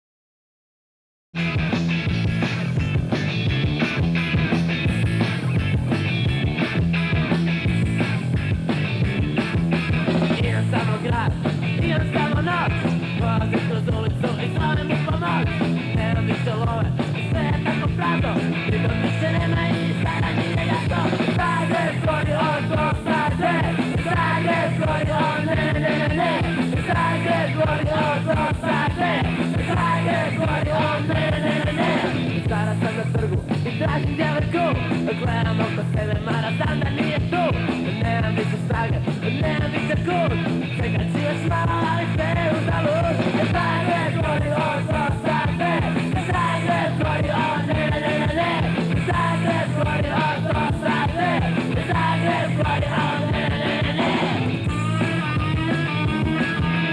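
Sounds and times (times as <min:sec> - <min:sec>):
fast drumming: 0:01.4 - 0:56.9
punk rock band playing: 0:01.4 - 0:56.9
person singing: 0:10.3 - 0:56.9.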